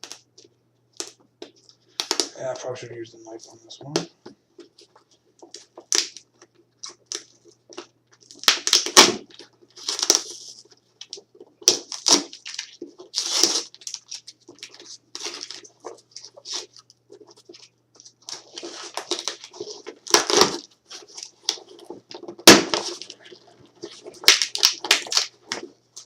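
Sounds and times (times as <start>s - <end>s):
cardboard package tearing: 8.2s - 26.0s.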